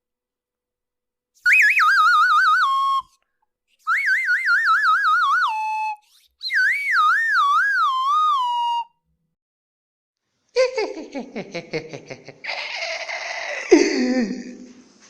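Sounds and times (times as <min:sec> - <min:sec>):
cartoon warbling whistle tone: 0:01.4 - 0:03.1, 0:03.9 - 0:08.9.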